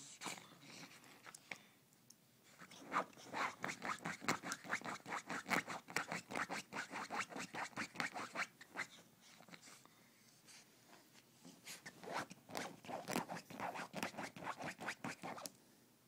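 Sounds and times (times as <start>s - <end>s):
dog scratching at couch: 12.0s - 15.4s.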